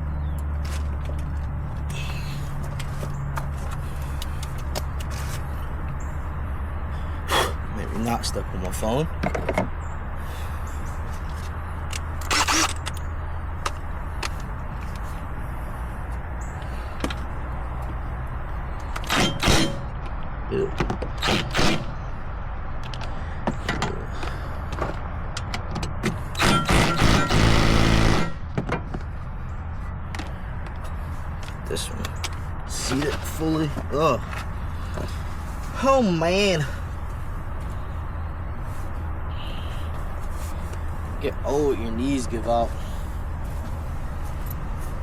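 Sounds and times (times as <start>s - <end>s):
metal tool clanks and knocks: 9.2s - 9.7s
impact wrench burst: 19.0s - 19.9s, 21.2s - 22.0s, 26.4s - 28.4s.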